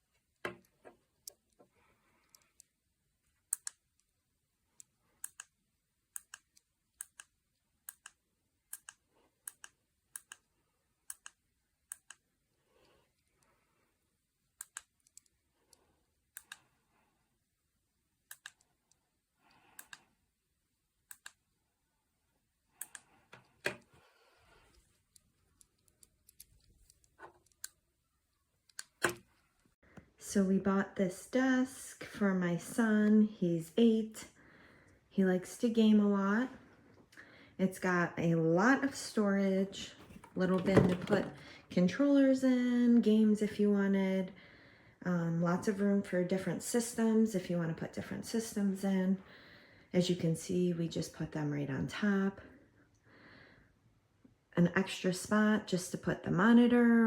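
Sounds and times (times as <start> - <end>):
sharp clicks and taps: 6.2 - 10.5, 11.1 - 12.2, 18.3 - 18.6.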